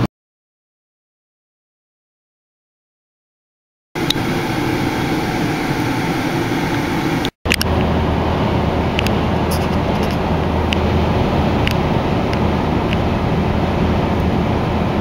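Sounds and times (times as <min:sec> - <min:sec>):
lawn mower engines running: 0:04.0 - 0:14.8.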